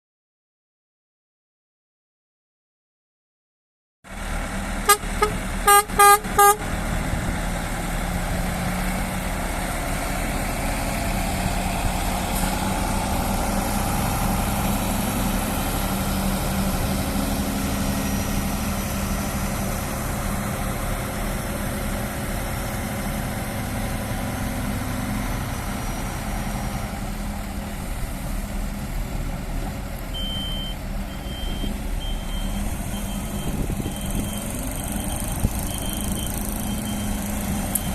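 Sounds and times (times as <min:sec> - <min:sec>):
vehicle engine running: 0:04.1 - 0:37.9
short horn toots: 0:04.9 - 0:06.7
high-pitched repeating beep: 0:30.2 - 0:37.2.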